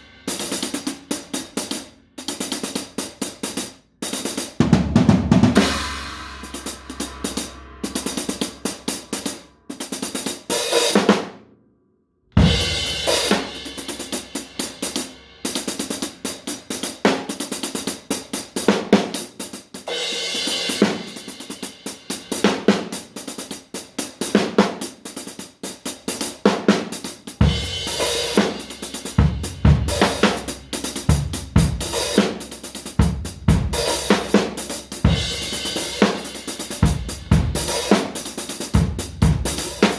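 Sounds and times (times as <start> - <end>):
drum kit playing: 0.0 - 11.4, 12.4 - 39.9
bass drum hits: 5.2 - 9.8, 29.1 - 32.0.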